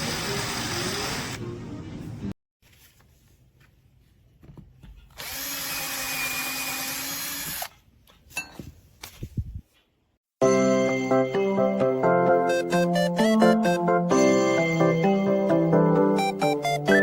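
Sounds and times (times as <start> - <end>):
power drill running: 0.0 - 1.4, 5.2 - 7.7
music: 10.4 - 17.0.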